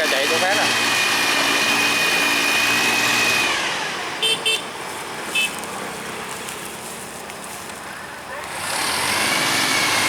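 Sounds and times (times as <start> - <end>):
vehicle engine whining: 0.0 - 10.0
horn beeps: 4.2 - 4.7.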